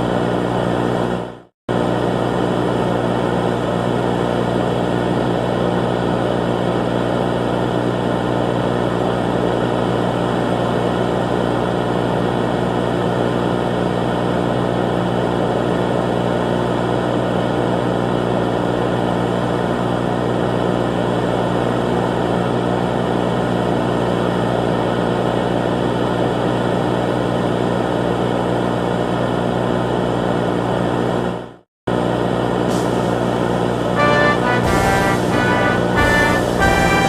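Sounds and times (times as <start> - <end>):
loud steady drone: 32.0 - 37.0.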